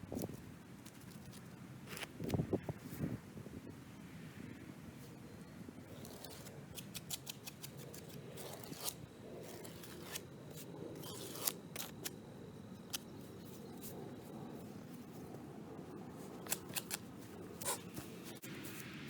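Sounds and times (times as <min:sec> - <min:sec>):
hand tool snipping: 0:06.0 - 0:09.0, 0:16.4 - 0:18.0.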